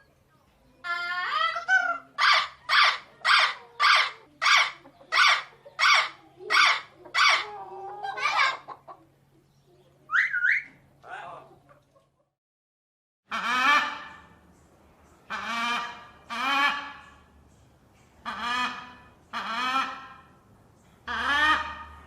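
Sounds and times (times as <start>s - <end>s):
parrot squawking: 0.8s - 8.8s, 10.1s - 10.8s, 21.0s - 22.0s.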